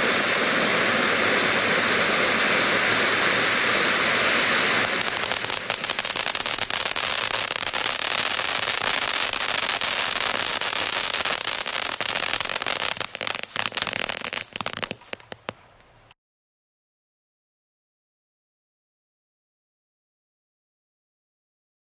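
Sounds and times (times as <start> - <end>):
spark fountain hissing and crackling: 0.0 - 15.6.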